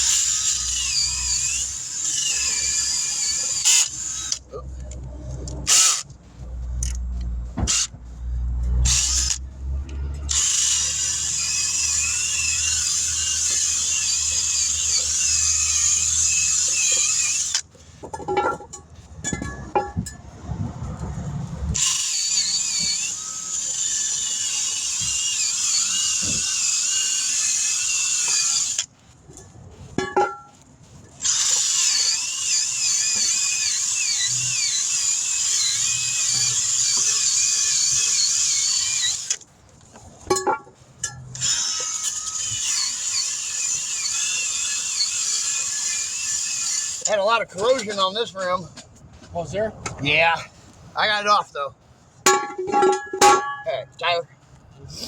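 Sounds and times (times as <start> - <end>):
high-speed air tool whining: 0.0 - 4.9, 5.5 - 6.2, 6.8 - 18.2, 21.6 - 28.9, 31.2 - 39.5, 41.3 - 48.5.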